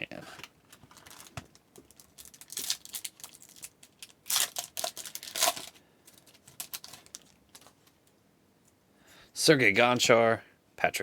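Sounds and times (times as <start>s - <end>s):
card pack wrapper crinkling: 0.7s - 7.9s
wrapper ripping: 0.8s - 7.7s.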